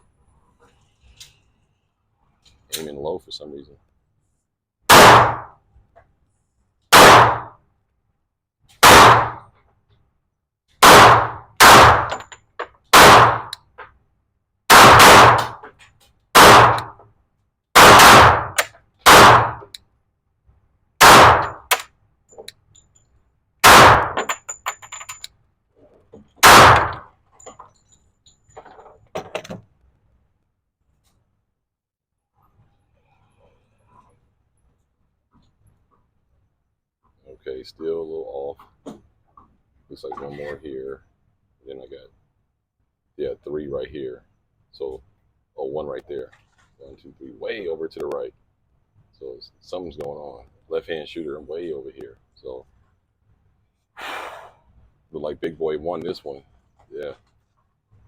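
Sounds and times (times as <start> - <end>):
pistol shots with short echo: 4.9 - 5.5, 6.9 - 7.5, 8.8 - 9.4, 10.8 - 12.2, 12.9 - 13.5, 14.7 - 15.6, 16.4 - 17.0, 17.8 - 19.7, 21.0 - 21.8, 23.6 - 24.2, 26.4 - 27.1.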